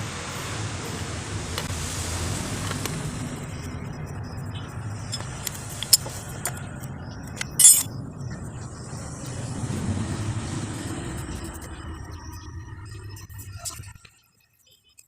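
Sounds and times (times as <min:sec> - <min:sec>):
metal tools clinking: 0:05.1 - 0:06.6, 0:07.3 - 0:07.9
metallic jingle: 0:07.4 - 0:07.9.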